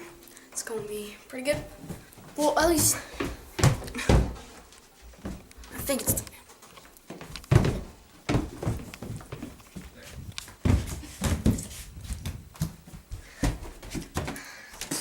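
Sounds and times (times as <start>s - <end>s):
knocks and thuds: 7.5s - 9.5s.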